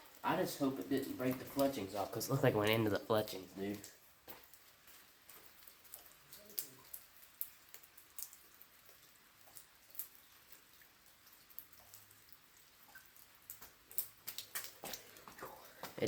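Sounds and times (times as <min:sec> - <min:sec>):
raindrops ticking on a surface: 0:00.0 - 0:16.0
soft hiss of rain: 0:00.0 - 0:16.0.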